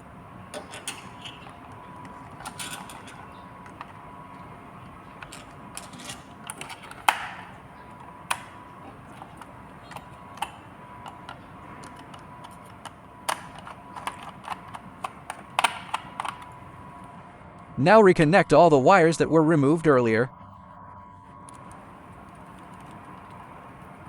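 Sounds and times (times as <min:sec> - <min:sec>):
hand tools clicking and knocking: 0:00.5 - 0:16.6.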